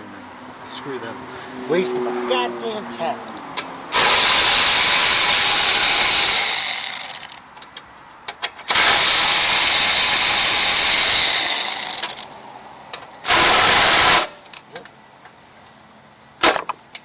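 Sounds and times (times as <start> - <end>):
power driver spinning out bolts: 13.2 - 14.4.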